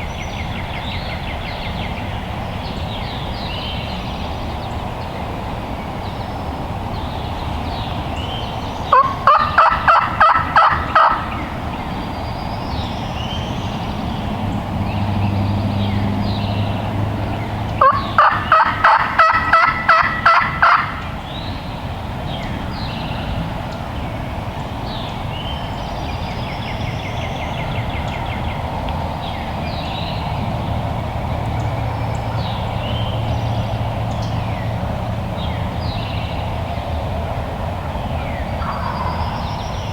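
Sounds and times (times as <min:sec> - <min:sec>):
songbird chirps: 0:00.0 - 0:39.9
turkey gobbling: 0:08.9 - 0:11.9, 0:17.8 - 0:21.2, 0:38.6 - 0:39.5.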